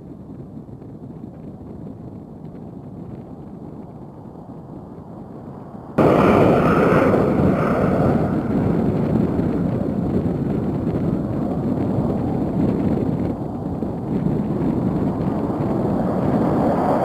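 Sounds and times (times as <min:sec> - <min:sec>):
jet engine roar: 0:05.6 - 0:17.0.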